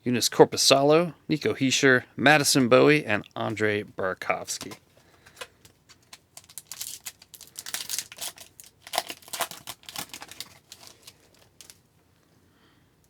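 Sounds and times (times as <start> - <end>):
wrapper crinkling and tearing: 4.6 - 11.9.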